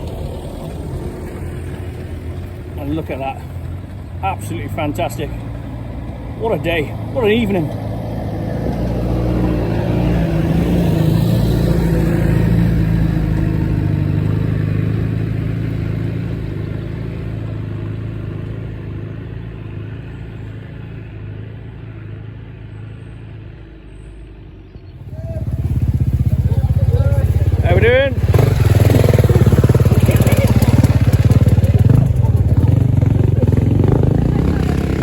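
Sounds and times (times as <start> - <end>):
louder rougher engine: 0.0 - 23.5, 25.0 - 35.0
off-road vehicle engine running: 0.0 - 24.1, 24.9 - 35.0.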